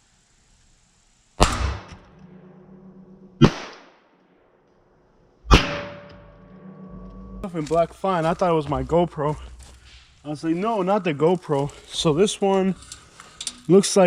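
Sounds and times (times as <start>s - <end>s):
pistol shots: 3.4s - 4.0s.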